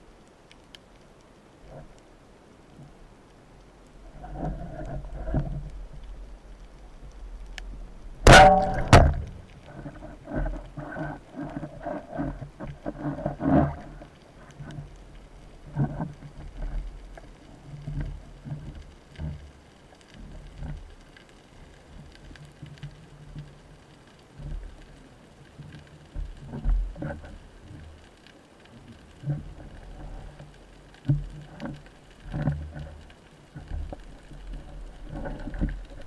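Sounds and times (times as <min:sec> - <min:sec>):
sharp underwater knocks: 0:08.2 - 0:10.6.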